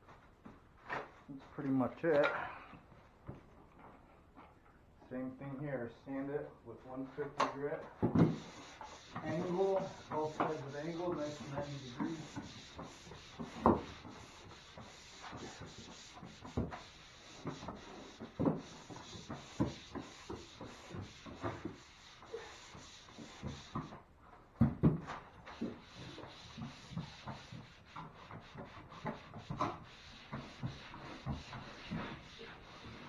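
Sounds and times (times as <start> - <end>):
sandpaper rubbing on drywall: 8.2 - 24.0, 25.1 - 33.0.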